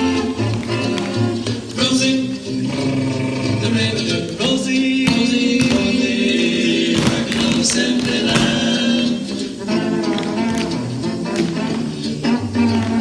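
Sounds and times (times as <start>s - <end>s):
instrumental backing music: 0.0s - 13.0s
several people singing: 1.8s - 10.9s.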